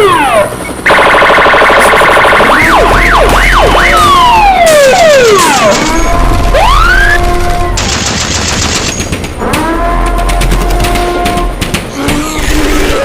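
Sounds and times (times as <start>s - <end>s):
electronic emergency sirens wailing: 0.0s - 7.8s.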